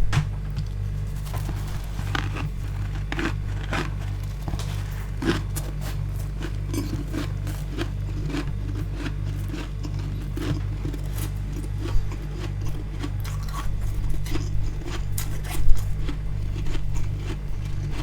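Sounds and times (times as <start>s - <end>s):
steady low hum: 0.0s - 18.0s
chewing frost crunches: 0.8s - 18.0s.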